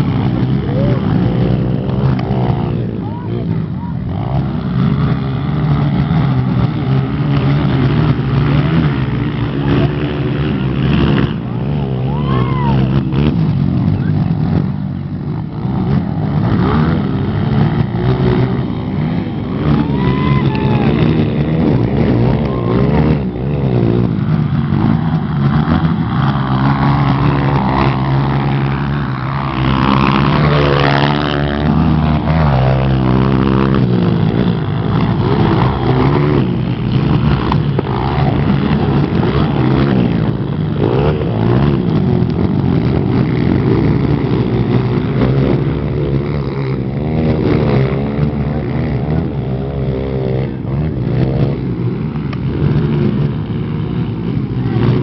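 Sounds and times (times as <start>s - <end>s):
motocross motorcycles racing: 0.0s - 55.0s.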